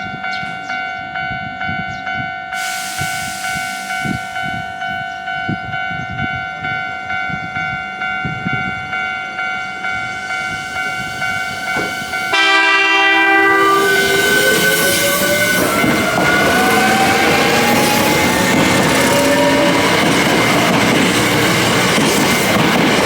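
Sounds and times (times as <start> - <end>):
arriving train noise: 0.0 - 23.0
electric train horn: 12.2 - 20.9
rising whine: 13.2 - 21.8.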